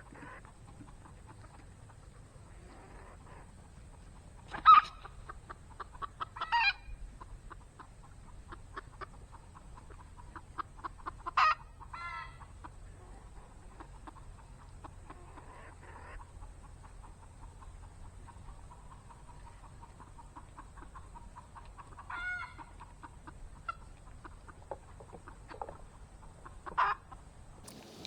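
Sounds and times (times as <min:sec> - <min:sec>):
chickens clucking: 0:00.0 - 0:28.0
loud chicken calls: 0:04.5 - 0:05.1, 0:06.3 - 0:06.9, 0:11.3 - 0:12.4, 0:21.9 - 0:22.8, 0:27.7 - 0:28.0.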